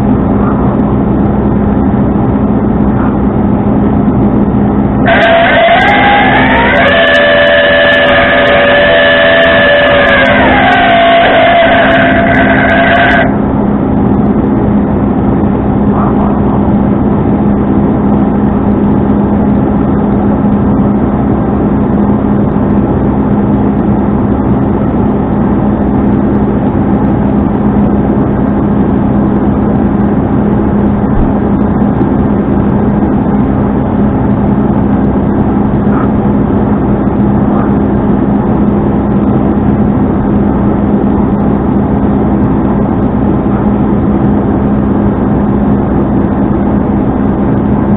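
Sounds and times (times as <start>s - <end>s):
truck engine droning: 0.0s - 47.9s
held tones shifting in pitch: 4.3s - 14.0s.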